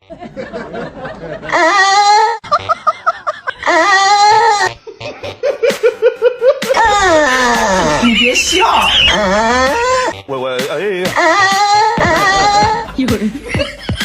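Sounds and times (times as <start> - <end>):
quick rhythmic laughter: 0.1 - 10.0, 12.0 - 14.0
person making wavering vocal noises: 6.7 - 10.1, 11.2 - 12.9.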